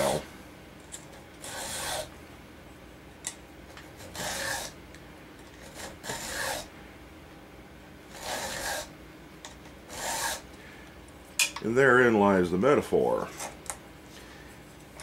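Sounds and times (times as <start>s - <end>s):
file rasping on chainsaw chain: 1.4s - 2.1s, 4.0s - 4.8s, 5.6s - 6.7s, 8.1s - 8.9s, 9.9s - 10.4s.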